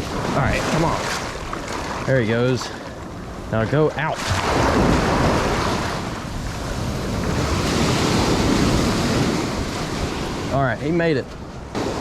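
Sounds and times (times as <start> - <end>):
ocean surf washing up: 0.0 - 12.0
wind buffeting microphone: 4.3 - 10.6.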